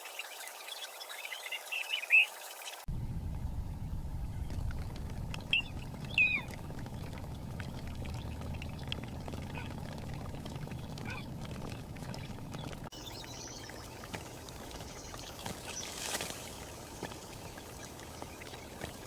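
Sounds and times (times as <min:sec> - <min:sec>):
steady low rumble: 0:02.9 - 0:19.0
ducks calling: 0:05.4 - 0:19.0.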